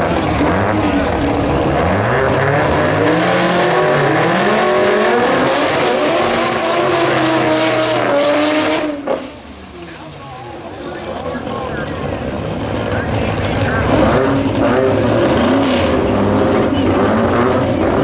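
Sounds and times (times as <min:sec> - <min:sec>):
racing car engine accelerating: 0:00.0 - 0:18.0.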